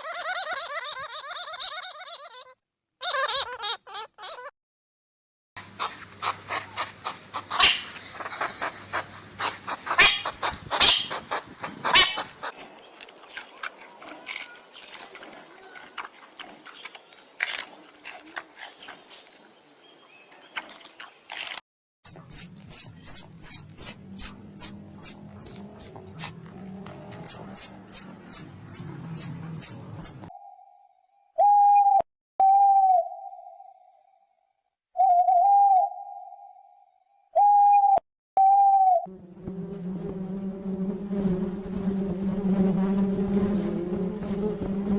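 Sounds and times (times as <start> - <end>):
birds chirping and clicking: 5.6 - 19.5, 20.2 - 30.7
high falling chirps: 22.0 - 26.4, 27.2 - 34.3
hooting notes: 22.1 - 30.8.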